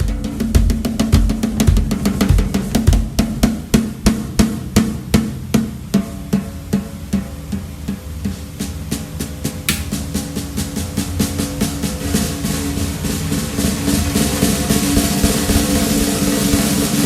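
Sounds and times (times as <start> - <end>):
bass drum thumps: 0.0 - 3.6, 9.7 - 10.1
snare drum strokes: 9.7 - 10.4, 14.1 - 17.0.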